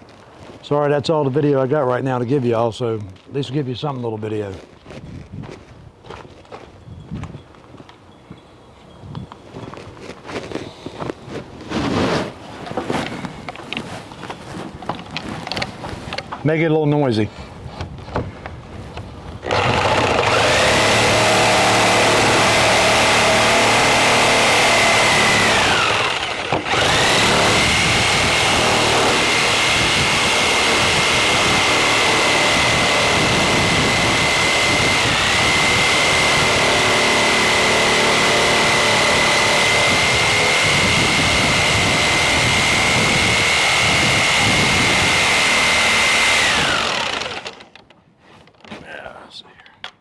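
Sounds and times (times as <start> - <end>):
electric saw motor whining: 19.4 - 47.8.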